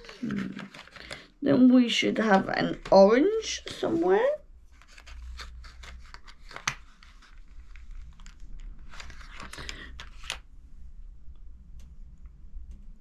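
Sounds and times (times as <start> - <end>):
packaging crinkling and rustling: 0.0 - 1.3, 4.0 - 10.4.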